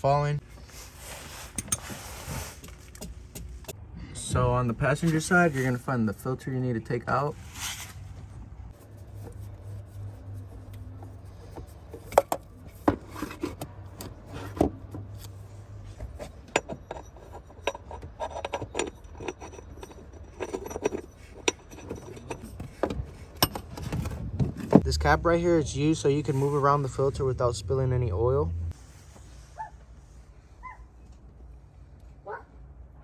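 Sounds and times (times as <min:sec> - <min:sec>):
tools clicking and scraping: 0:01.3 - 0:03.8, 0:08.7 - 0:24.8.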